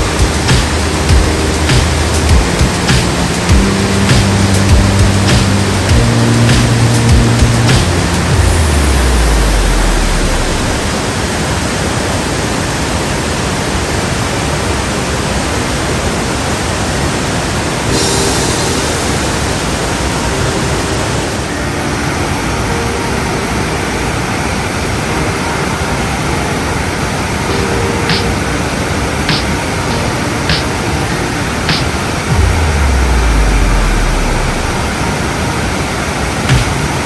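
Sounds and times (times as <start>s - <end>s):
waterfall roaring: 7.8s - 21.6s, 30.9s - 37.0s.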